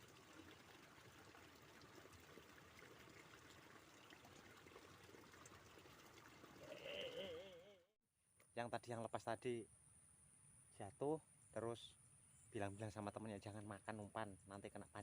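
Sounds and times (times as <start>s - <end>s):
flowing stream: 0.0s - 7.6s.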